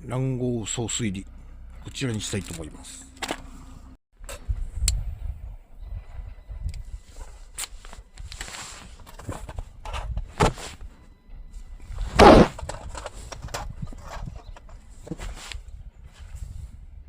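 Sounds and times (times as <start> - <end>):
rustling and crinkling: 7.0 - 11.0, 11.6 - 16.7.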